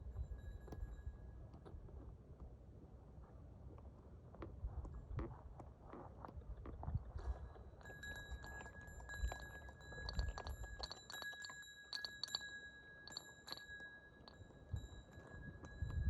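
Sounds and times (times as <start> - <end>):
high-pitched ringing tone: 0.0 - 1.5
metallic clicks and clinks: 7.8 - 16.0.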